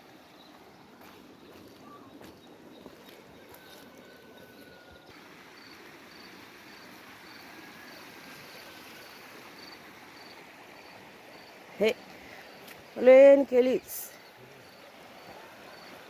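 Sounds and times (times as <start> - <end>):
faint outdoor background noise: 0.0 - 16.0
insect chirping: 3.6 - 15.9.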